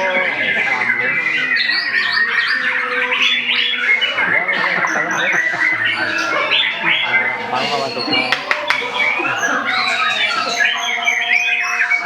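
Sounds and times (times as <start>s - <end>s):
bird singing whistles and warbles: 0.0s - 12.0s.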